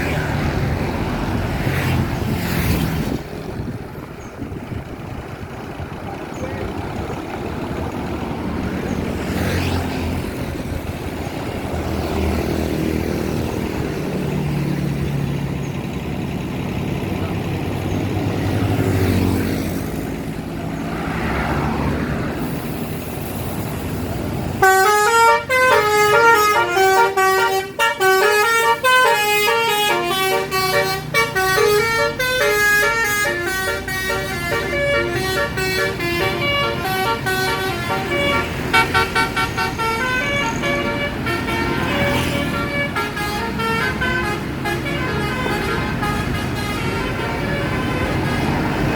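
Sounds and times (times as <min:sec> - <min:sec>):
vehicle engine and road noise: 0:00.0 - 0:48.9
musical bus horn melody: 0:24.6 - 0:48.9.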